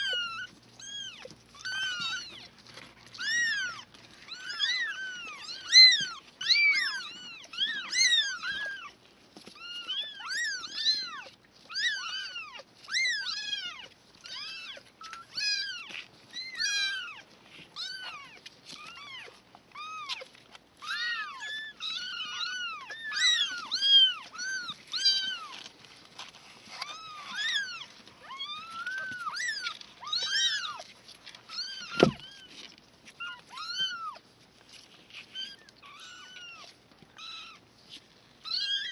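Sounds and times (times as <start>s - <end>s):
kittens mewing: 0.0s - 30.9s.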